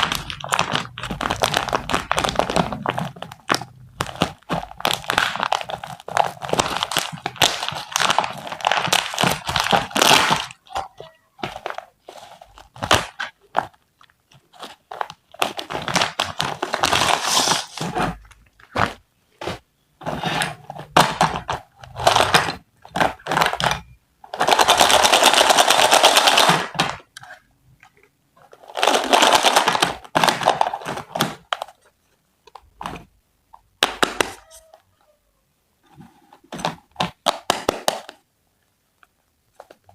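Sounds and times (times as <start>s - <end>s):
packaging crunching and crinkling: 0.0s - 31.9s.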